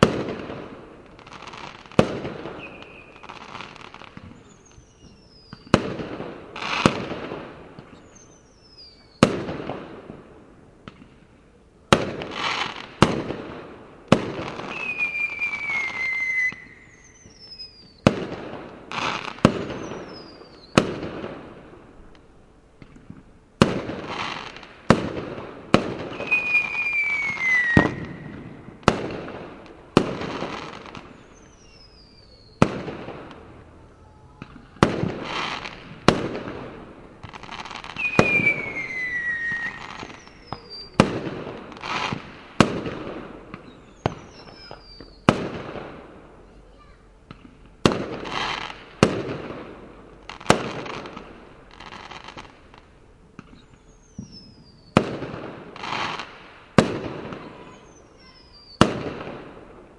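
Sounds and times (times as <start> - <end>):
firework bangs: 0.0 - 11.3, 11.9 - 22.2, 22.8 - 59.9
firework crackle: 0.0 - 59.9
firework whistles gliding down: 1.4 - 5.8, 7.8 - 9.4, 14.4 - 18.2, 18.9 - 20.9, 26.0 - 29.0, 30.2 - 32.8, 37.2 - 42.2, 43.5 - 45.4, 53.4 - 55.1, 57.3 - 58.9.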